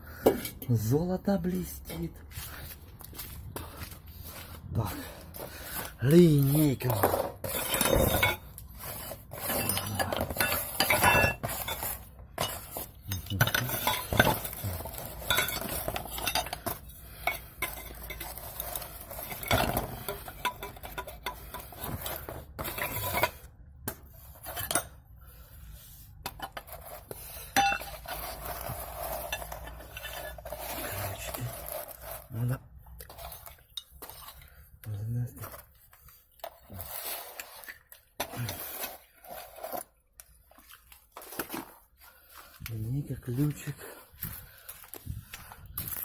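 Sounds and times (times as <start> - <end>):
metal tools clinking: 9.4 - 23.4.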